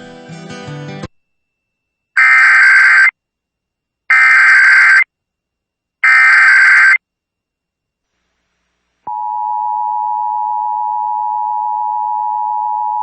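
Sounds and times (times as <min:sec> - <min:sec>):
digital data tone bursts: 0:02.2 - 0:03.1.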